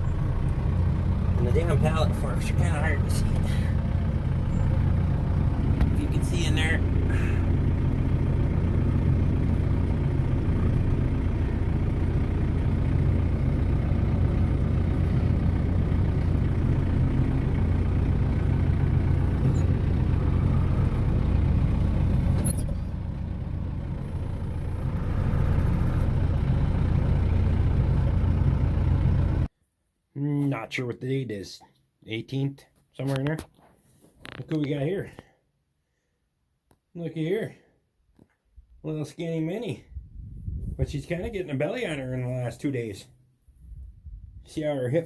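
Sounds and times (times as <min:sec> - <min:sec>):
vehicle engine droning: 0:00.0 - 0:29.5.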